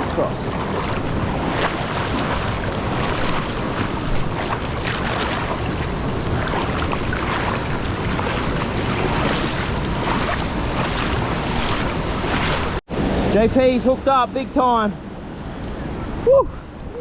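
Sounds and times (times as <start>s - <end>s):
jungle creek flowing: 0.0s - 12.8s.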